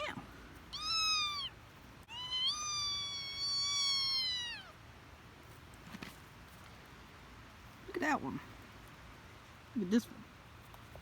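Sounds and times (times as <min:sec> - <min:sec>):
cat meowing: 0:00.0 - 0:04.8.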